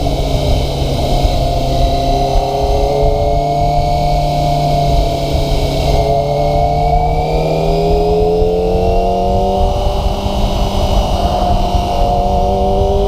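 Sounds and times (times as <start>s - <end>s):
motorcycle engine accelerating: 0.0s - 13.0s
wind rumbling on microphone: 0.0s - 13.0s.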